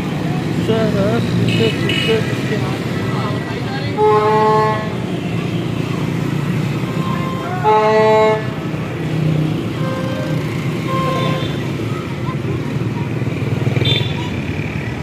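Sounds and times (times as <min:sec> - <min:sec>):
road traffic rumble: 0:00.0 - 0:15.0
vehicle horn: 0:03.9 - 0:05.1, 0:07.0 - 0:08.6, 0:09.8 - 0:11.6.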